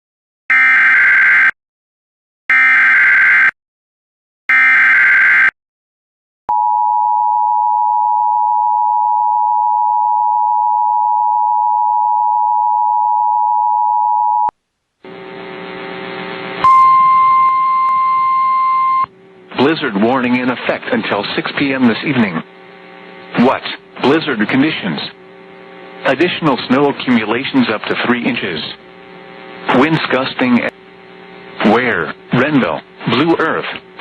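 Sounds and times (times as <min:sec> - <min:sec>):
buzzy data bursts: 0:15.1 - 0:33.7
two-tone attention signal: 0:16.6 - 0:19.1
steady high tone: 0:16.6 - 0:20.3
noisy hiss: 0:19.1 - 0:34.0.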